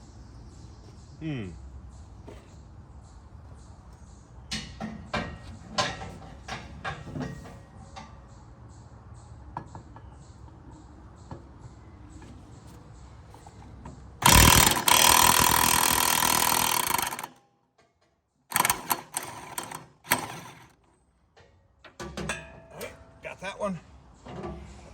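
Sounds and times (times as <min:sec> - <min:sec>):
loud steady whirring: 0:14.2 - 0:17.3, 0:18.5 - 0:20.7
socket ratchet clicking: 0:14.2 - 0:17.3, 0:18.5 - 0:20.7.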